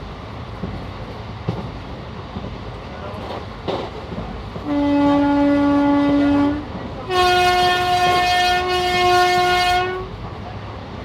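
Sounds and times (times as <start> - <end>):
train rumbling: 0.0 - 11.0
train horn blasts: 4.6 - 10.2.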